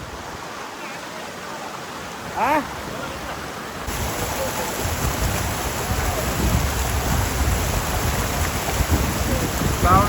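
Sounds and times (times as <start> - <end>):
waterfall rushing: 0.0 - 10.0
wind rumble on microphone: 3.9 - 10.0.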